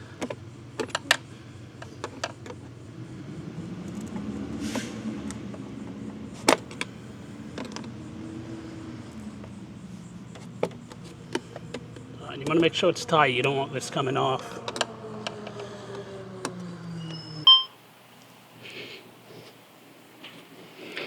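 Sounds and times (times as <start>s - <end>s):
steady low hum: 0.0s - 20.1s
plastic parts and tool clicking: 14.6s - 15.6s.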